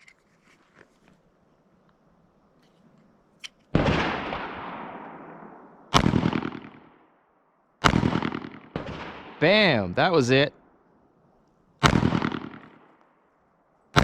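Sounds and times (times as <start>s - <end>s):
pistol shots with echo: 3.7s - 7.1s, 7.8s - 10.5s, 11.8s - 13.0s.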